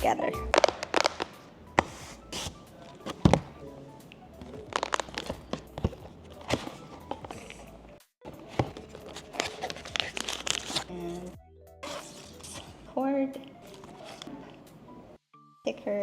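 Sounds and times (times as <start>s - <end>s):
soft background music: 0.0s - 16.0s
cardboard box being handled: 4.5s - 7.6s, 8.3s - 10.9s.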